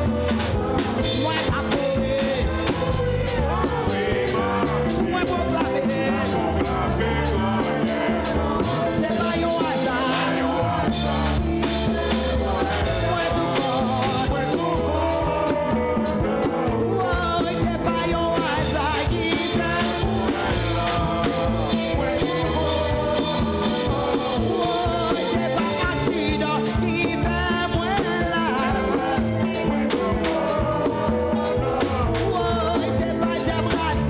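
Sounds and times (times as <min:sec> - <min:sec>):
bass: 0:00.0 - 0:34.0
drum kit: 0:00.0 - 0:34.0
keyboards: 0:00.0 - 0:34.0
voices singing: 0:00.0 - 0:34.0.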